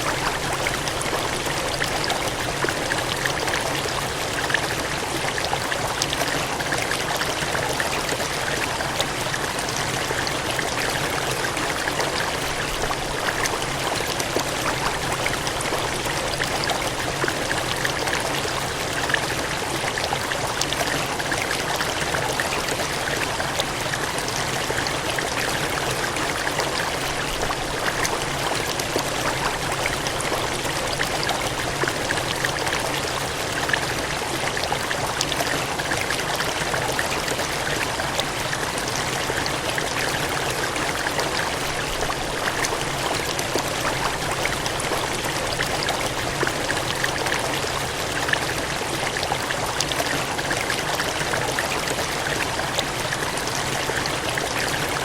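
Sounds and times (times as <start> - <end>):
gushing cascading water: 0.0 - 55.0.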